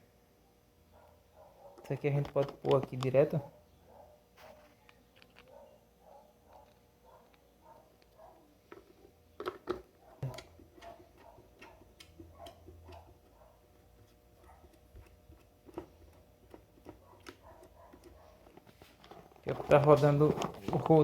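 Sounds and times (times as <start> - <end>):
plastic blender parts clicking: 8.7 - 13.0.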